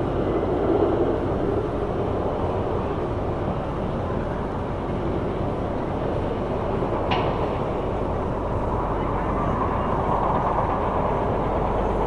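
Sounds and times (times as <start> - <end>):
distant roller coaster rumble: 0.0 - 12.0.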